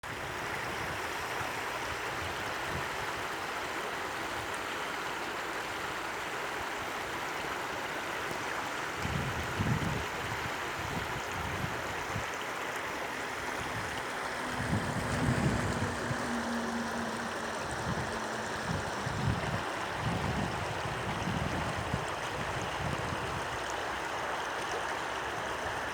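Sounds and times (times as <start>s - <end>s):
stream babbling over stones: 0.0s - 25.9s
low rumbling surges: 13.0s - 21.0s.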